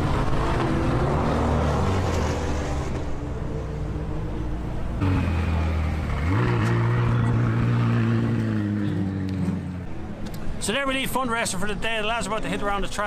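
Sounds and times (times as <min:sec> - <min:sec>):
engine revving up: 0:00.0 - 0:04.0, 0:04.8 - 0:09.8.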